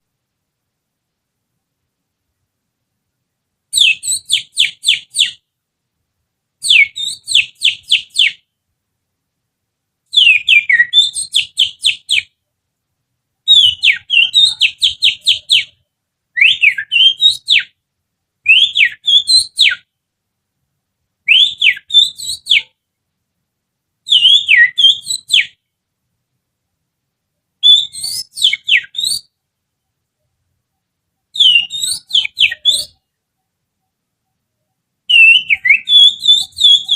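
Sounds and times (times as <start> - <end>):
person whistling bird song: 3.8 - 5.4, 6.6 - 8.4, 10.2 - 12.3, 13.5 - 15.8, 16.4 - 17.7, 18.5 - 19.8, 21.3 - 22.7, 24.1 - 25.6, 27.6 - 29.3, 31.4 - 33.0, 35.1 - 36.9.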